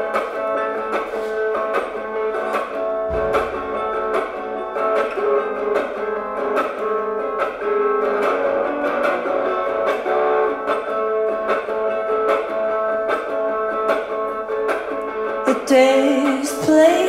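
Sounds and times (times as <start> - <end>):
guitar strummed through small amp: 0.0 - 17.0.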